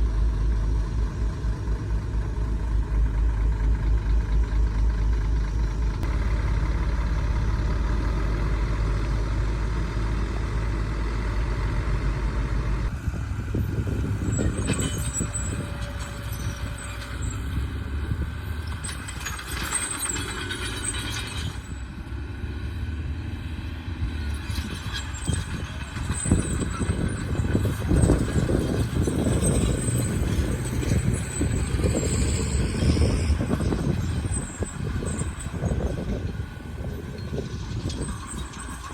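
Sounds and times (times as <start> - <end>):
heavy diesel engine running: 0.0 - 38.9
metallic clanks: 14.1 - 21.8, 24.6 - 38.9.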